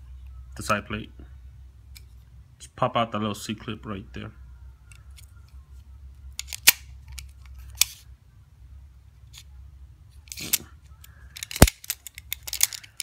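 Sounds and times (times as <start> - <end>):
metal tool clicks: 11.3 - 13.0.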